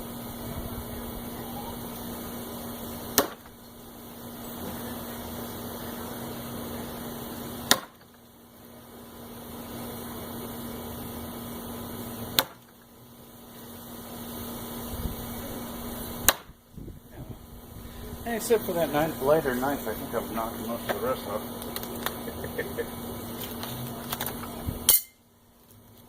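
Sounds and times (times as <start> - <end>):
steady background hum: 0.0 - 26.0
knives striking wooden target: 3.2 - 3.5, 7.6 - 8.0, 12.4 - 12.7, 16.3 - 16.5.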